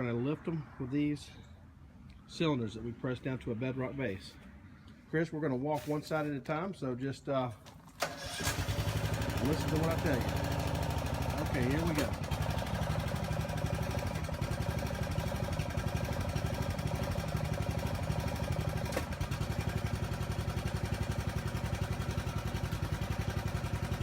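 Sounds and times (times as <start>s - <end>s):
small engine running: 8.0s - 24.0s.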